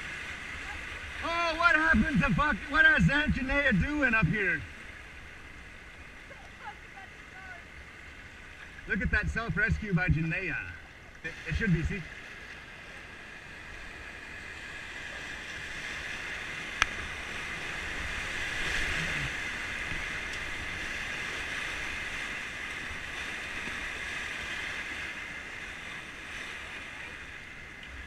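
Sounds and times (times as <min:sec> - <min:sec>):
whitewater rushing: 0:00.0 - 0:04.6, 0:08.8 - 0:12.2, 0:15.0 - 0:25.2.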